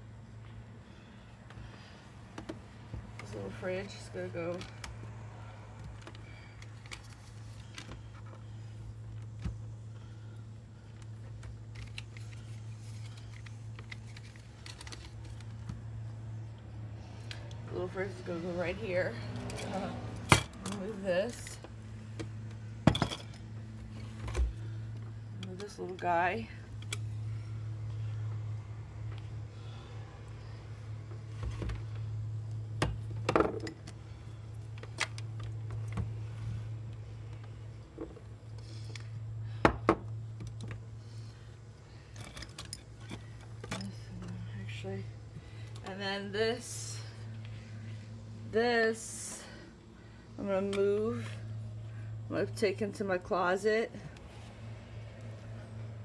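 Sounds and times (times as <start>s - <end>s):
steady low hum: 0.0s - 56.0s.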